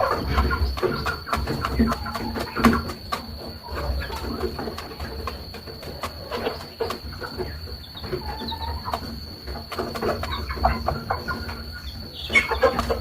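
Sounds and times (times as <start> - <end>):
chicks peeping: 0.0 - 13.0
hen clucking: 0.0 - 13.0.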